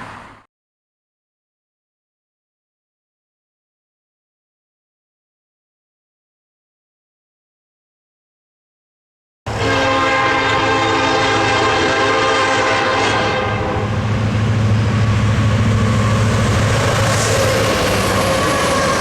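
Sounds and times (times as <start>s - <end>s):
locomotive multi-chime air horn: 9.5s - 14.1s, 17.3s - 19.0s
train engine rumble: 9.5s - 19.0s.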